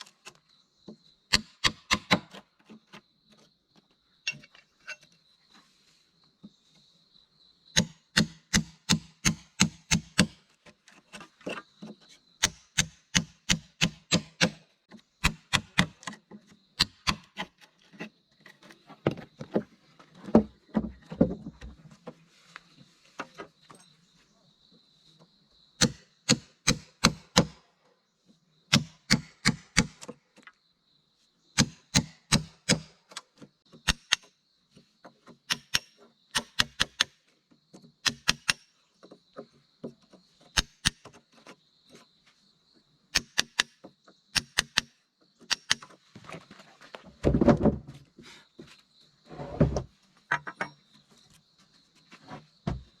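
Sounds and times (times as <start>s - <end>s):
sharp strikes on wood: 1.3s - 2.3s, 7.7s - 10.4s, 12.4s - 14.6s, 15.2s - 16.1s, 16.8s - 17.4s, 25.8s - 27.6s, 28.7s - 30.1s, 31.6s - 33.0s, 33.8s - 34.3s, 35.5s - 37.2s, 38.0s - 38.7s, 43.2s - 43.8s, 44.4s - 45.9s.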